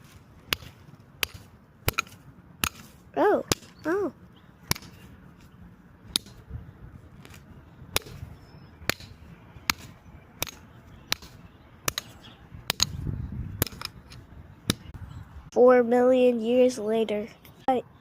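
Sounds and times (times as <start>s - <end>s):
axe striking steel padlock: 0.5s - 2.9s, 4.7s - 5.0s, 6.1s - 6.4s, 8.8s - 12.1s, 13.6s - 14.0s.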